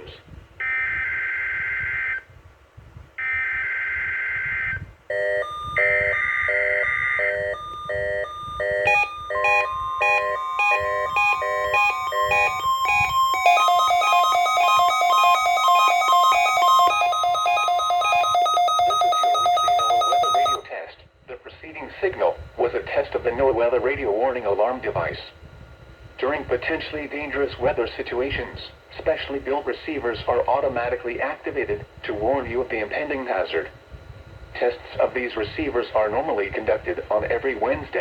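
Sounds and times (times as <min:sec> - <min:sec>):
steady warning alarm tone: 0:00.6 - 0:02.3, 0:03.2 - 0:20.7
rhythmic electronic alert beeping: 0:04.5 - 0:20.7
warbling digital header bursts: 0:05.8 - 0:20.6.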